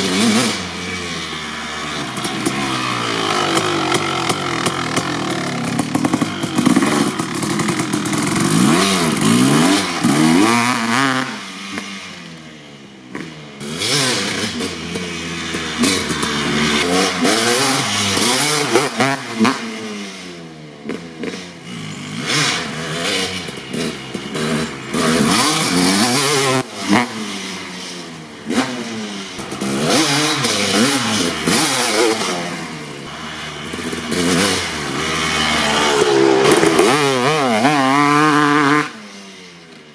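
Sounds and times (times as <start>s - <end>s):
dirt bike engine revving: 0.0s - 12.3s, 20.8s - 39.2s.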